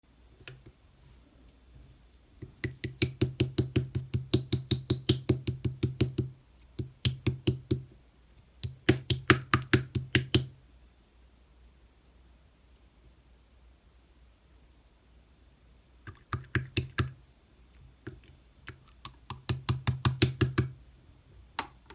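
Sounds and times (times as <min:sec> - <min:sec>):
fingers poking slime clicks: 0:02.4 - 0:07.9, 0:08.6 - 0:10.5, 0:16.1 - 0:17.2, 0:18.7 - 0:20.8.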